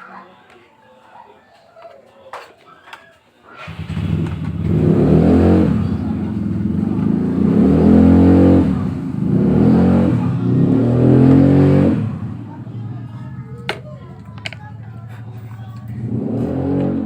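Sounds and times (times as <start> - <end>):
engine revving: 3.6 - 13.2, 16.0 - 17.0.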